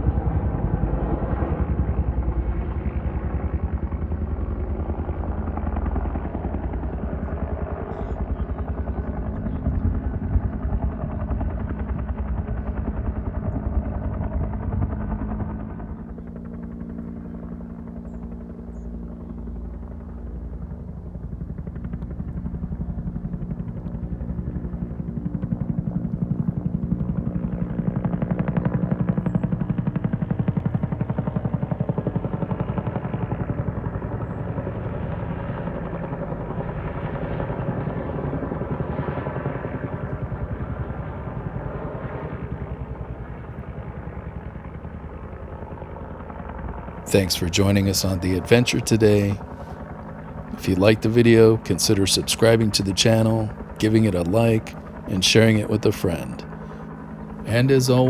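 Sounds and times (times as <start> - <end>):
helicopter rotor chopping: 44.8 - 58.0.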